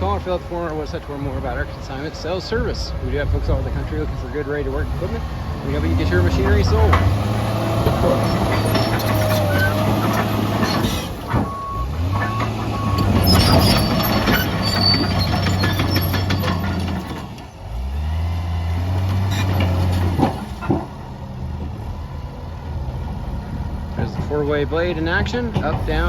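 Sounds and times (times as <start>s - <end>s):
bulldozer diesel engine: 0.0s - 26.0s
metal clanks: 6.4s - 17.5s.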